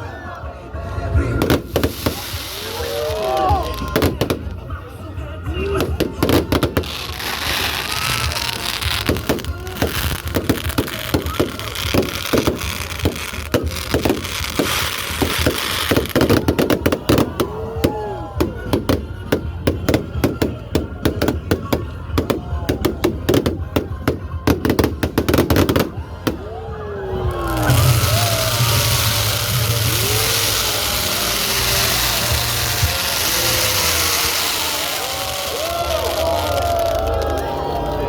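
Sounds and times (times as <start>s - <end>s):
people exclaiming: 0.0s - 4.7s, 5.5s - 38.0s
fireworks banging: 1.4s - 4.8s, 5.7s - 26.5s, 27.5s - 38.0s.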